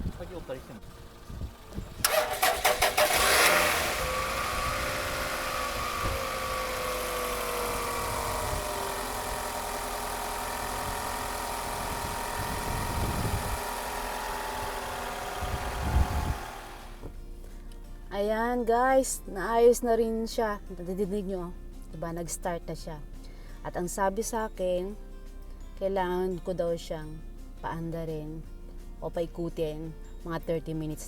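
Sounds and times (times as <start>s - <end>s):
van engine starter cranking: 0.0s - 17.1s
van engine idling: 0.0s - 17.2s.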